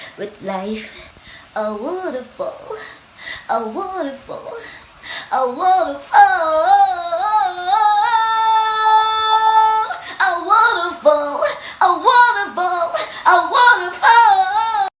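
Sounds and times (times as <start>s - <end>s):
woman singing unaccompanied: 0.0s - 15.0s.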